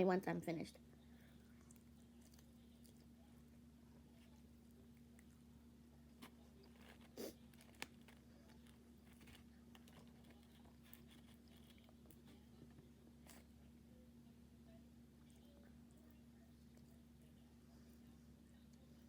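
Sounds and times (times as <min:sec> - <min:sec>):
low steady hum: 0:00.0 - 0:19.0
person chewing food: 0:01.3 - 0:03.4, 0:06.2 - 0:13.6
food crunch: 0:01.5 - 0:03.4, 0:06.1 - 0:13.6.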